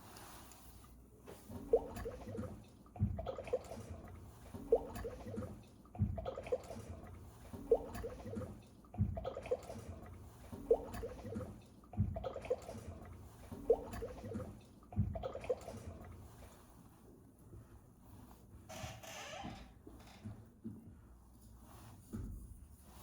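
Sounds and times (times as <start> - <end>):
sharp water drip: 1.5 - 16.2
water gurgling: 1.5 - 16.5.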